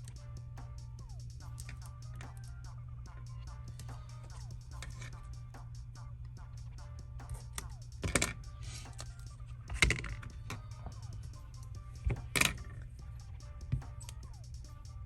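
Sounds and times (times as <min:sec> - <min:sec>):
background music: 0:00.0 - 0:15.0
handling noise on workbench: 0:08.0 - 0:09.1, 0:12.0 - 0:12.8.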